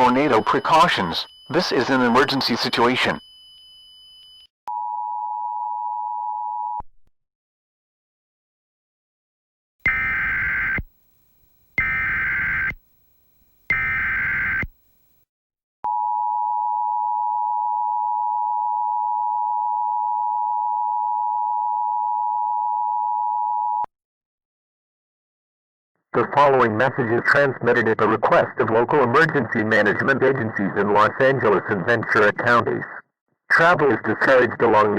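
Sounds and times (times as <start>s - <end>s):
screeching digital data tones: 0.0s - 4.5s, 11.8s - 12.8s, 13.7s - 14.7s
steady two-tone alert signal: 0.0s - 4.8s.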